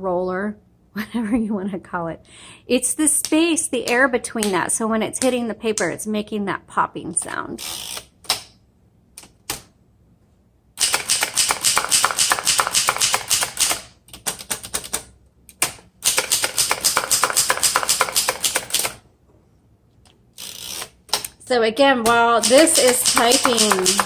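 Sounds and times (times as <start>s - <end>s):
typewriter keystrokes popping: 10.8s - 19.0s, 22.0s - 24.0s.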